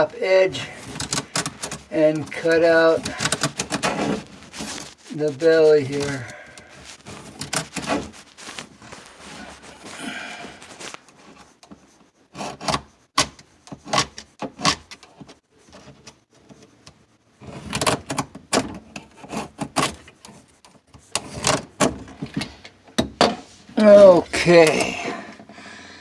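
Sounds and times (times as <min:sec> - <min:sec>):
pencil scraping on drywall: 0:00.6 - 0:14.8, 0:19.0 - 0:21.5
clicks and knocks on drywall: 0:12.4 - 0:16.2, 0:17.5 - 0:20.4.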